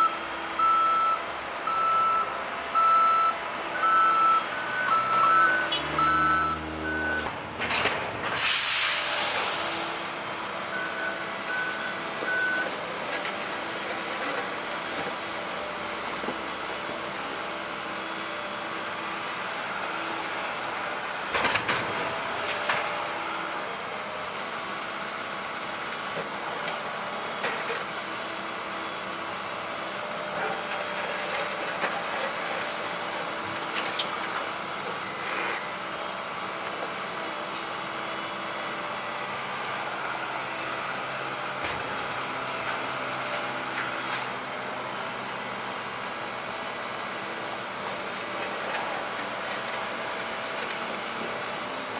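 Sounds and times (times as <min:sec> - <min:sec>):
backup alarm beeping: 0:00.0 - 0:07.5
machinery engines running: 0:00.6 - 0:24.0
hissing air burst: 0:08.3 - 0:10.2.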